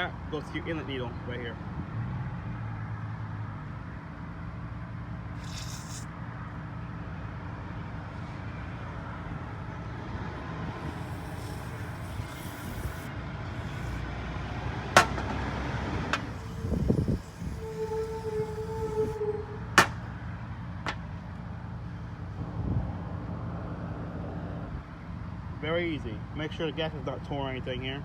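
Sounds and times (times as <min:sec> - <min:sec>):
short hissing sounds: 0:05.3 - 0:06.2, 0:10.6 - 0:15.4, 0:16.1 - 0:19.2.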